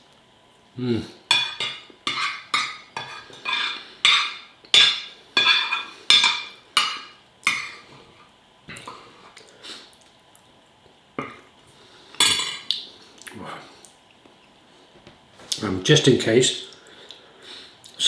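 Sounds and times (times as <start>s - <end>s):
cutlery clinking against a dish: 1.3s - 7.8s, 12.2s - 12.8s.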